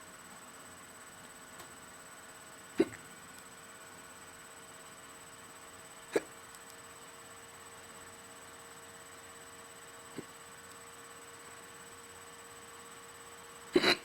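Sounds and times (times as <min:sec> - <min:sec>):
electrical hum: 0:00.0 - 0:14.0
person hiccuping: 0:02.8 - 0:03.0, 0:06.1 - 0:06.3, 0:13.7 - 0:14.0.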